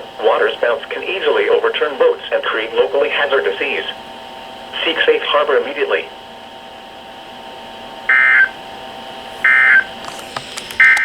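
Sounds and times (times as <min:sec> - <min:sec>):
faint radio hiss: 0:00.0 - 0:04.0, 0:04.7 - 0:06.2
digital data tone bursts: 0:08.1 - 0:08.6, 0:09.4 - 0:09.9.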